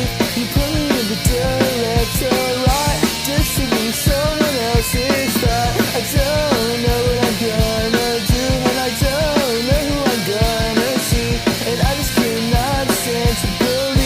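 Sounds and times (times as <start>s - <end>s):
drum kit beating: 0.0s - 14.0s
lead melody bending in pitch: 1.3s - 3.7s.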